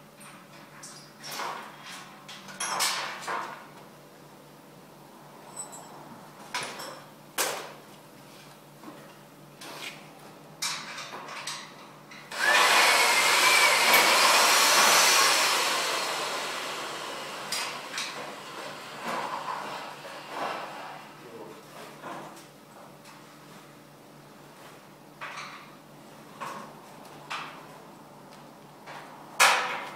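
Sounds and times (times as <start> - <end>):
handheld power tool running: 12.3 - 21.1.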